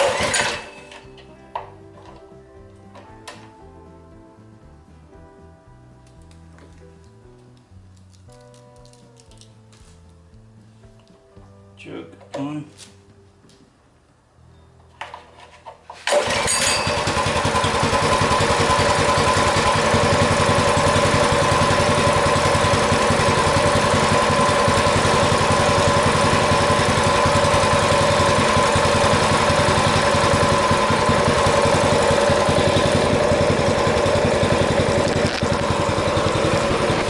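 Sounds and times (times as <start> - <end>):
engine cranking: 0.0 - 5.0, 15.0 - 37.0
mini bike engine idling: 0.0 - 10.5, 16.1 - 37.0.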